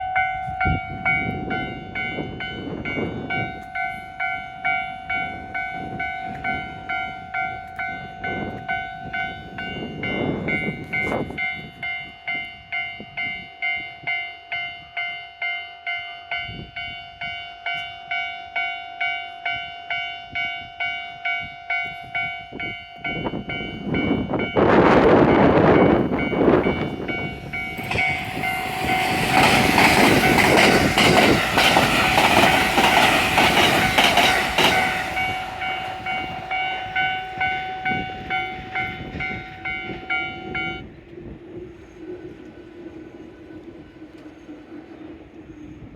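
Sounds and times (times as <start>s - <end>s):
level crossing warning bell: 0.0s - 40.9s
electric train rushing past: 19.4s - 45.9s.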